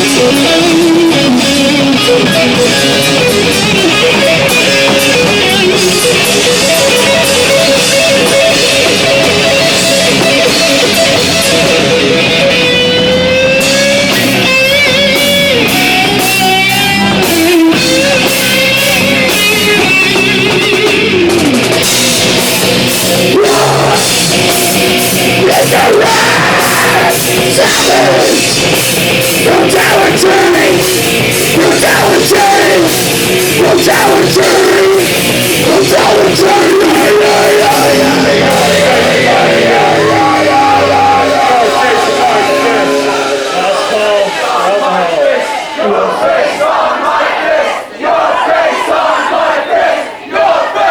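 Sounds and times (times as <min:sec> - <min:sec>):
distorted electric guitar: 0:00.0 - 0:44.4
heavy rock band playing: 0:00.0 - 0:46.8
person shouting vocals: 0:23.3 - 0:24.2, 0:25.4 - 0:28.4.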